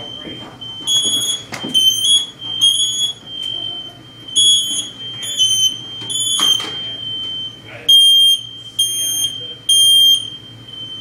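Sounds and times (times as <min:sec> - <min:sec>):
smoke alarms beeping: 0:00.0 - 0:11.0.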